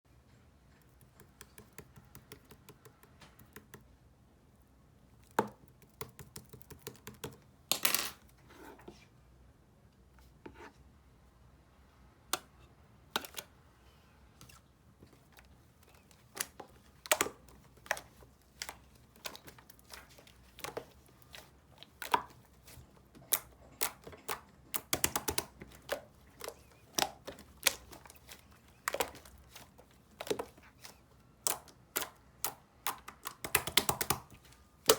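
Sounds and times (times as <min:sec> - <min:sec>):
slime squishing: 0:14.4 - 0:34.9.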